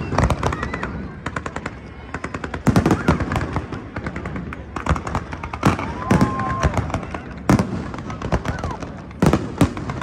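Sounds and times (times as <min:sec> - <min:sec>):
fireworks bangs and crackles: 0:00.0 - 0:10.0.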